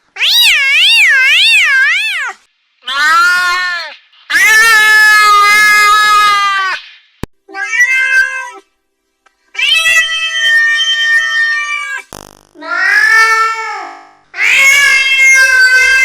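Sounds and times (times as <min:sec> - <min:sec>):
angry cat meowing: 0:07.5 - 0:08.6, 0:09.6 - 0:16.0.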